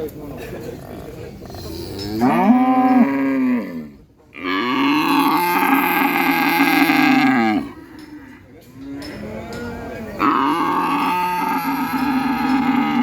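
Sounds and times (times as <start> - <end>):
cow mooing: 4.4 - 7.8, 10.2 - 13.0.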